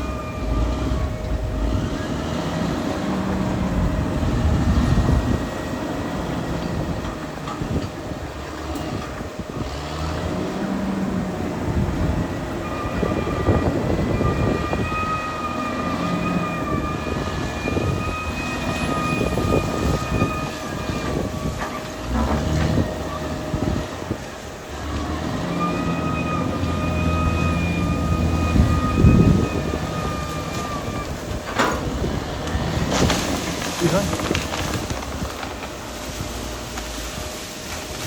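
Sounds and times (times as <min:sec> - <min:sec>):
bulldozer diesel engine running: 0:00.0 - 0:38.0
bulldozer tracks clanking: 0:00.0 - 0:38.0.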